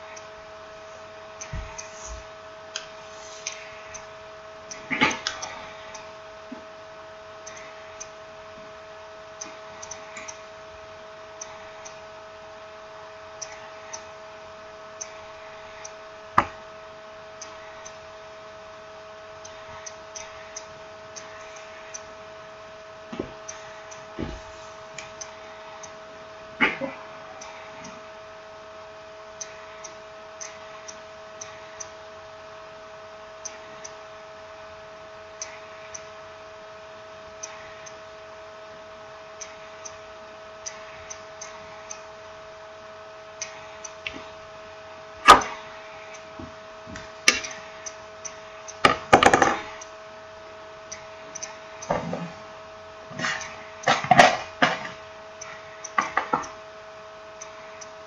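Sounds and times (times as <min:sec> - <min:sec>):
electrical hum: 0:00.0 - 0:58.0
faint irregular ticking: 0:07.4 - 0:08.2, 0:50.9 - 0:51.9.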